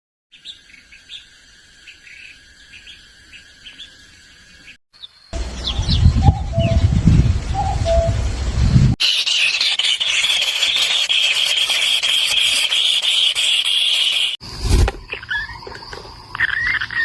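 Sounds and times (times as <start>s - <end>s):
small birds chirping: 0.3s - 8.2s, 9.0s - 14.4s, 15.0s - 17.0s
low rumble: 5.4s - 9.0s.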